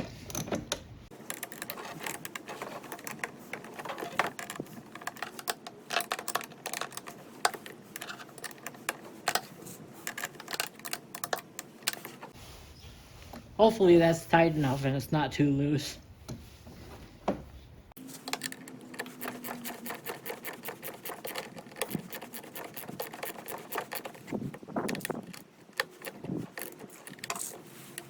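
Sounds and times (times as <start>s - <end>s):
wrench clicking on bolts: 18.2s - 28.0s.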